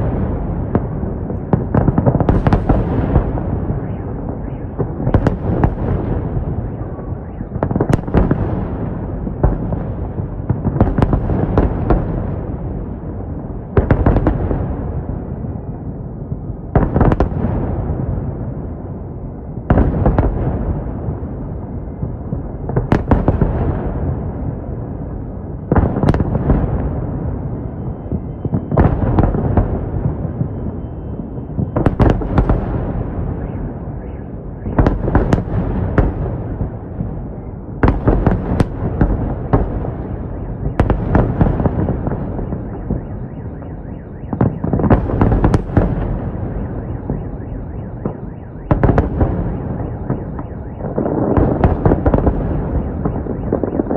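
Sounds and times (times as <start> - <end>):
firework bangs: 0.0 - 18.9, 19.5 - 53.9
rumbling crackling echo: 0.0 - 53.9.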